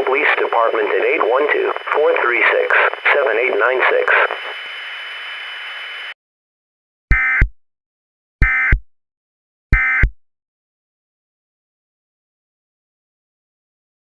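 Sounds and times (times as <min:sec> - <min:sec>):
radio static hiss: 0:00.0 - 0:06.2
digital data tone bursts: 0:00.2 - 0:04.7.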